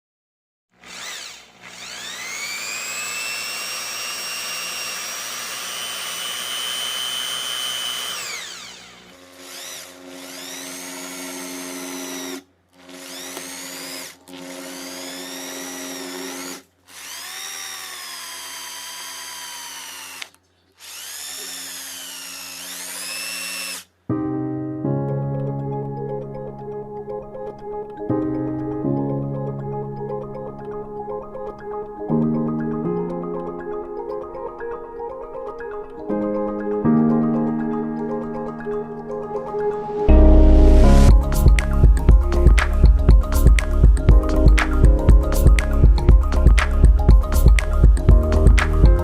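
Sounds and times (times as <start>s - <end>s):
electric drill whining: 0.8s - 23.9s.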